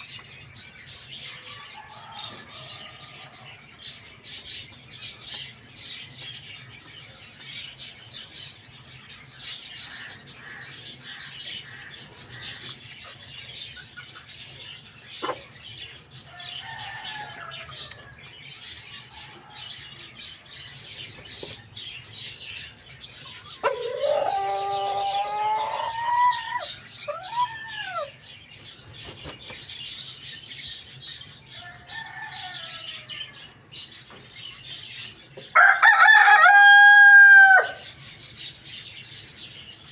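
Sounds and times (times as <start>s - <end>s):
small birds chirping: 0.0s - 39.9s
distant rooster crows: 1.5s - 3.6s, 16.3s - 18.2s, 23.6s - 28.1s, 31.6s - 33.5s, 35.5s - 37.9s
rooster crowing: 16.3s - 18.0s, 23.6s - 28.1s, 31.6s - 33.4s, 35.6s - 37.8s.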